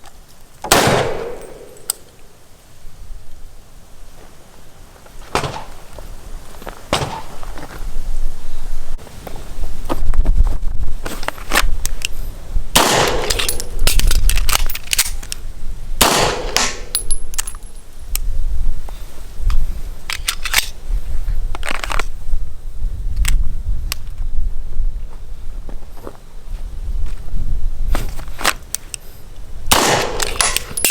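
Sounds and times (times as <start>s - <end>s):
loud echoing gunshots: 0.7s - 1.9s, 12.8s - 13.8s, 16.0s - 16.9s, 29.7s - 30.7s.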